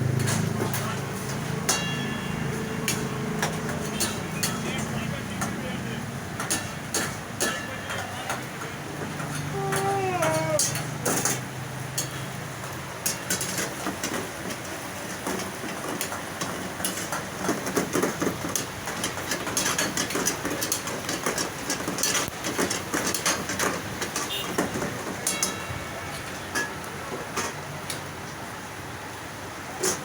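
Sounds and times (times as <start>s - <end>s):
metal utensils clinking: 0.1s - 5.0s, 9.2s - 12.4s, 25.2s - 25.8s
background din with voices: 7.4s - 11.4s.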